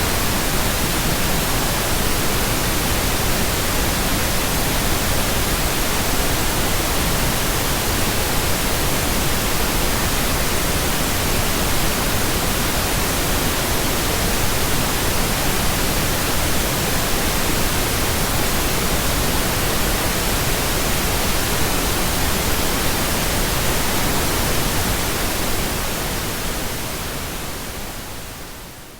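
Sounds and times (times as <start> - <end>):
pink noise hiss: 0.0 - 28.9.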